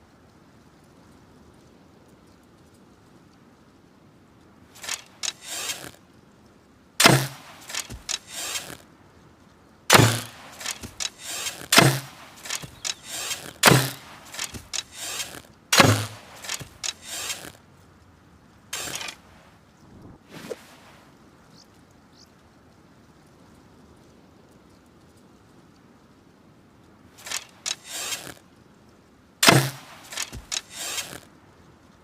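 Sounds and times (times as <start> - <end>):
light clicks and rattles: 0.2 - 18.2, 26.8 - 32.0
bow shot snap and thrum: 7.0 - 8.7, 9.9 - 17.5, 29.4 - 31.2.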